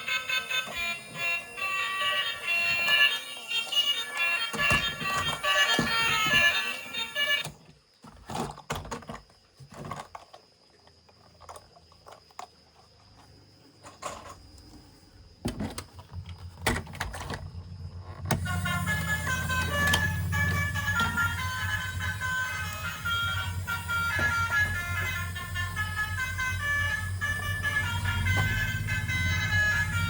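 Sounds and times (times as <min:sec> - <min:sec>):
toys clicking and knocking: 0:00.0 - 0:07.6, 0:18.3 - 0:30.0.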